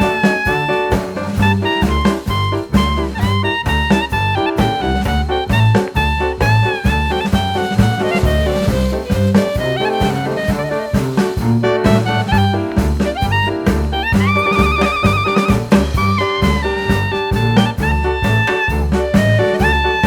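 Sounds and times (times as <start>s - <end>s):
upbeat jazz music: 0.0s - 20.0s.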